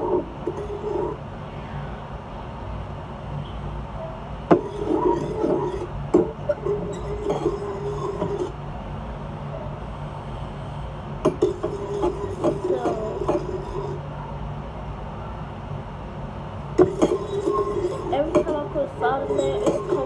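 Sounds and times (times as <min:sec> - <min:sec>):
tool stirring slime in bowl: 0:11.3 - 0:14.0, 0:16.8 - 0:20.0.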